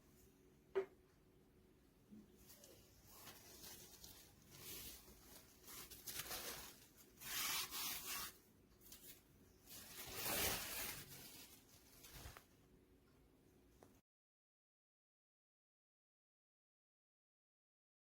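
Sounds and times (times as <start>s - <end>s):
material rustling and rubbing: 2.4s - 12.6s.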